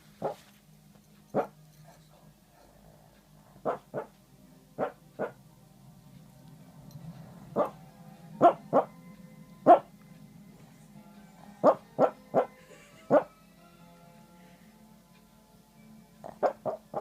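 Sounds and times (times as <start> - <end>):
small dog barking: 0.2 - 0.4, 1.3 - 1.5, 3.6 - 4.1, 4.8 - 5.4, 8.4 - 8.9, 9.7 - 9.9, 11.6 - 12.5.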